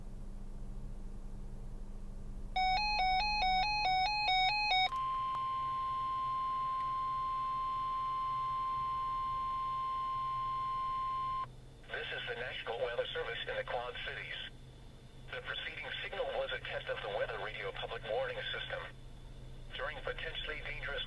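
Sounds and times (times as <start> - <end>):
alternating two-pitch electronic tone: 2.6 - 11.5
steady warning alarm tone: 2.6 - 11.5.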